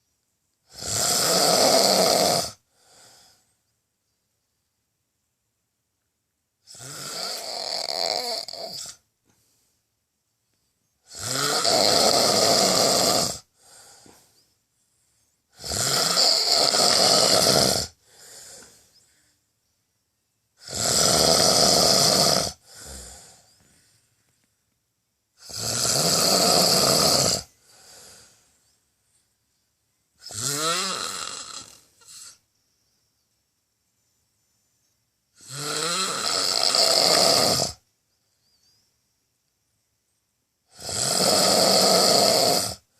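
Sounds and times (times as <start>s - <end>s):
person snoring loudly: 0.7s - 3.3s, 6.6s - 9.0s, 11.1s - 14.2s, 15.5s - 18.7s, 20.6s - 23.4s, 25.4s - 28.2s, 30.2s - 32.4s, 35.4s - 37.8s, 40.7s - 42.9s
quiet breath: 2.6s - 4.9s, 8.7s - 11.1s, 13.4s - 15.6s, 17.9s - 20.1s, 22.5s - 24.8s, 27.4s - 30.2s, 31.6s - 35.4s, 37.8s - 40.3s.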